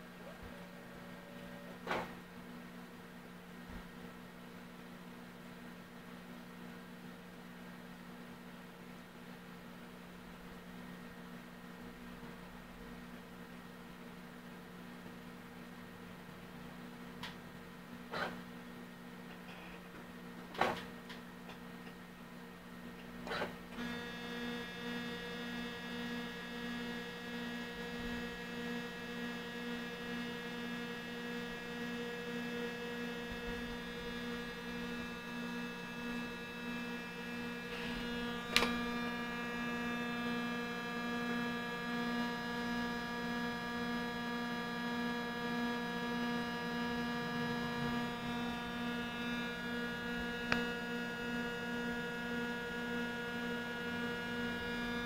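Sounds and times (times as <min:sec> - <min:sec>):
copier droning hum: 0:00.0 - 0:55.0.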